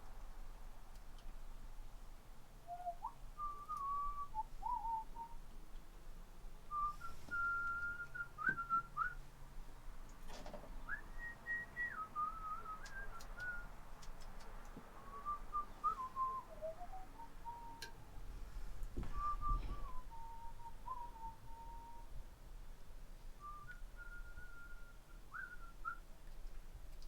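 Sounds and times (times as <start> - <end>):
person whistling a tune: 2.7 - 5.4, 6.7 - 9.2, 10.9 - 13.7, 15.1 - 17.9, 19.0 - 22.1, 23.4 - 26.0.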